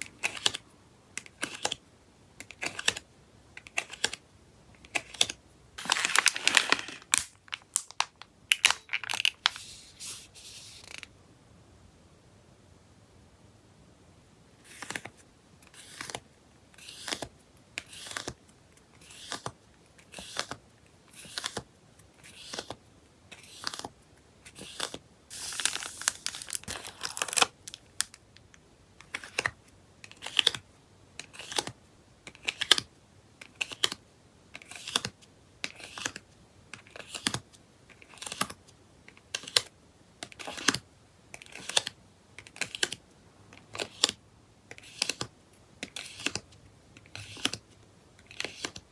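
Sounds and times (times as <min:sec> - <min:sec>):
plastic sleeves rustling and clicking: 0:04.8 - 0:09.8, 0:24.5 - 0:28.2
packaging crinkling: 0:05.8 - 0:10.0, 0:24.7 - 0:28.2.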